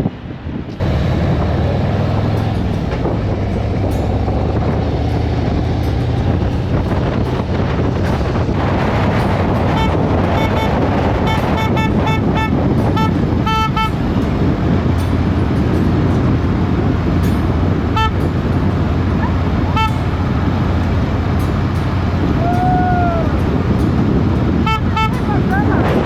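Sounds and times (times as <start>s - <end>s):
traffic rumble: 0.0s - 26.0s
wind noise: 0.0s - 26.0s
vehicle horn beeps: 9.5s - 14.2s, 17.9s - 18.5s, 19.6s - 20.2s, 24.5s - 25.6s.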